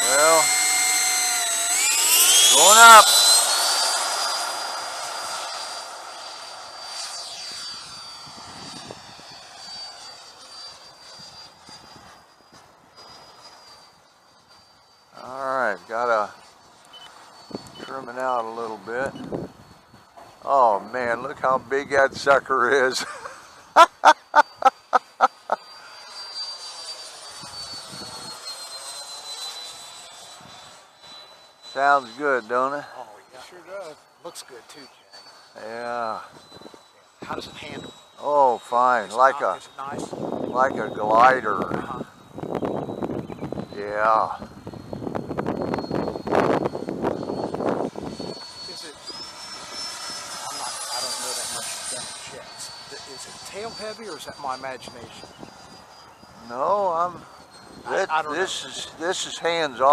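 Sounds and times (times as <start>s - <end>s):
loud pitched calls: 0.0s - 6.1s
rc jet fan whine: 0.0s - 59.9s.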